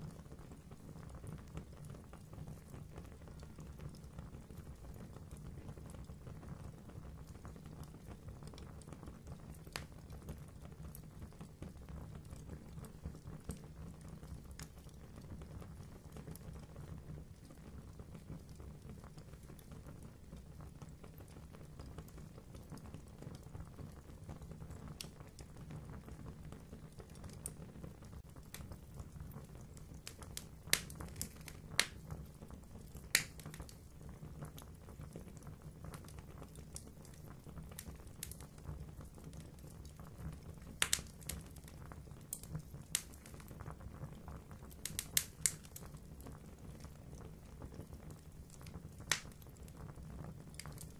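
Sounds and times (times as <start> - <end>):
fire crackling: 0.0 - 50.9
sharp fire pops: 29.7 - 33.9, 35.9 - 39.1, 39.7 - 43.8, 44.7 - 46.0, 48.5 - 49.6.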